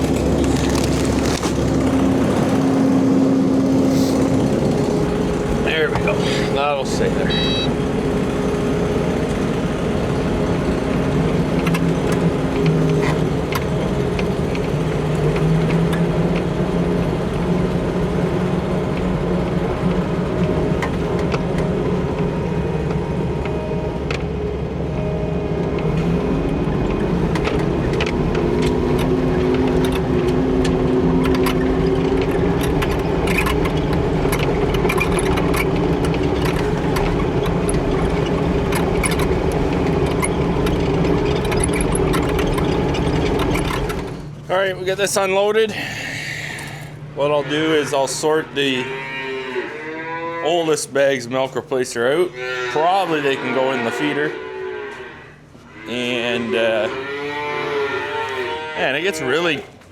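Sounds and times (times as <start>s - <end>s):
diesel engine of farm machine: 0.0s - 51.8s
knocks and rattles: 25.8s - 44.4s.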